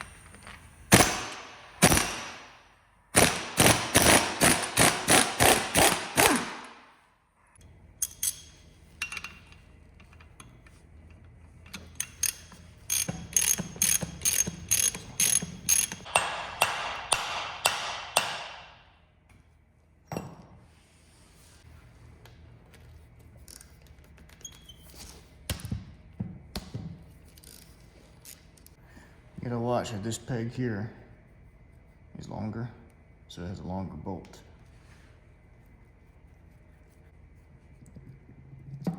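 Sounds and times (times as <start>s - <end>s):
ratchet wrench clicking: 8.0s - 10.5s, 11.7s - 16.1s.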